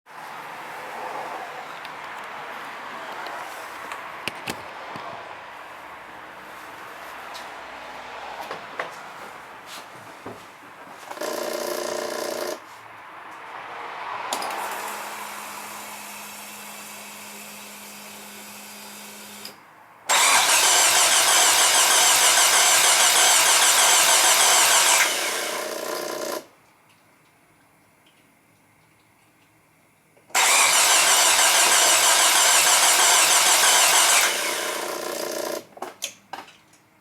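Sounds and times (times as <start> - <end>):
engine cranking on starter: 19.2 - 26.5, 30.4 - 35.7.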